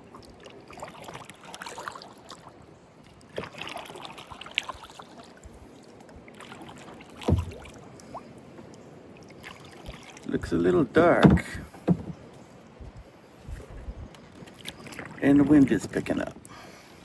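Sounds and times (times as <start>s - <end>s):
kayak paddle splashing water: 0.0s - 12.6s, 14.2s - 16.9s
loud thump: 7.3s - 7.6s, 11.1s - 12.2s.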